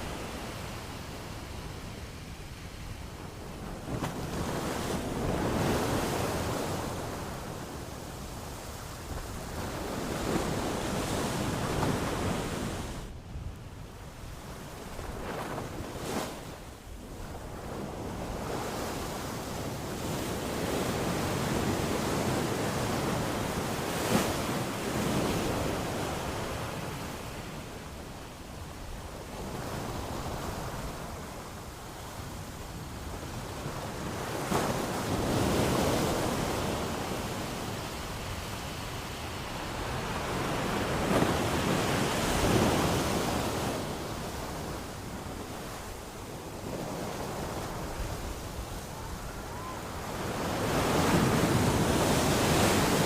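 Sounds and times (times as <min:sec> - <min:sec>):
ocean waves breaking: 0:33.7 - 0:53.0.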